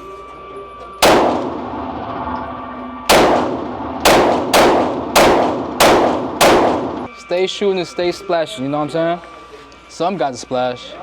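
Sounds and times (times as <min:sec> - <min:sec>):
gunshots echoing indoors: 0:01.0 - 0:02.0, 0:03.1 - 0:07.1.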